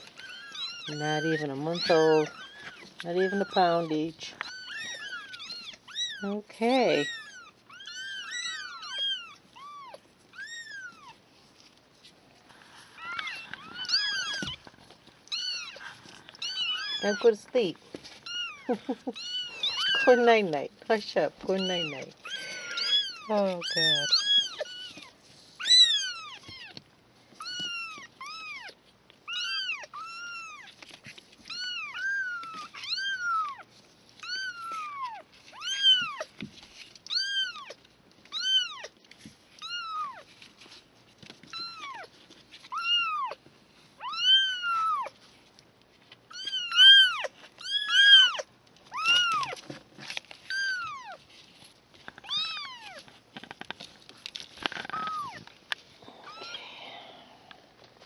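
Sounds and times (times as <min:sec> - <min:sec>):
kittens mewing: 0:18.2 - 0:20.5, 0:21.6 - 0:26.7, 0:56.0 - 0:57.6.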